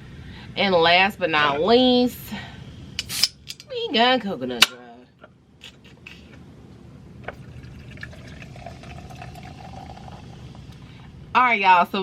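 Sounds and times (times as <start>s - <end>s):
liquid pouring: 7.3s - 10.9s
soda fizzing in a glass: 7.4s - 10.8s.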